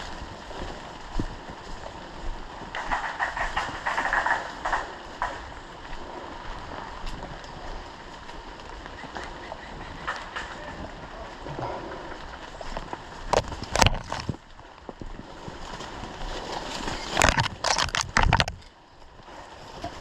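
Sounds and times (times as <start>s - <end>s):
airsoft gun full-auto burst: 2.8s - 4.9s.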